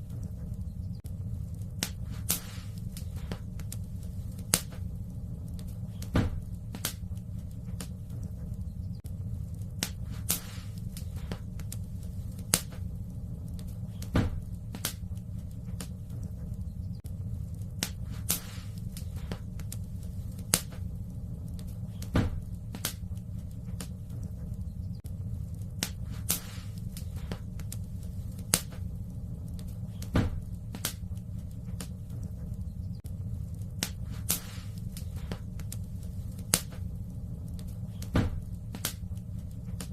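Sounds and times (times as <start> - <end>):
fire crackling and popping: 0.0 - 39.9
low rumble: 0.0 - 39.9.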